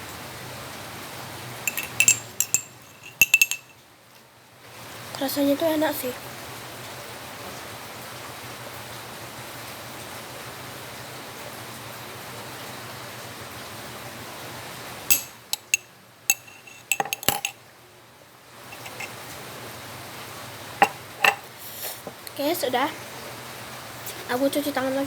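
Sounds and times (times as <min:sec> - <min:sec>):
glass and spoon clinking: 0:01.7 - 0:03.8, 0:15.1 - 0:17.6, 0:18.7 - 0:19.2, 0:20.8 - 0:21.5.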